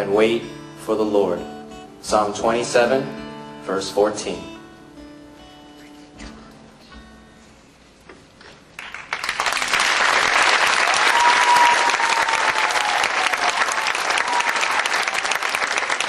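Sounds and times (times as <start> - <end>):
audience applause: 8.8 - 16.0.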